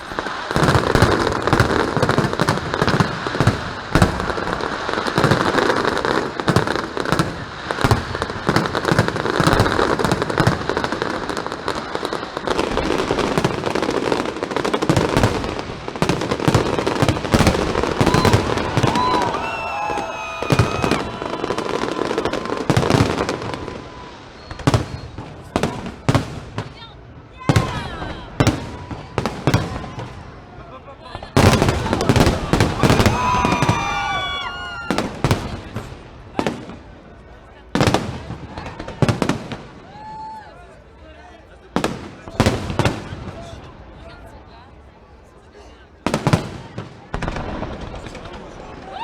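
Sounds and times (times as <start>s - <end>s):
fireworks bangs and crackling: 0.0s - 40.8s, 41.5s - 49.0s
high wavering firework whistles: 18.0s - 22.6s.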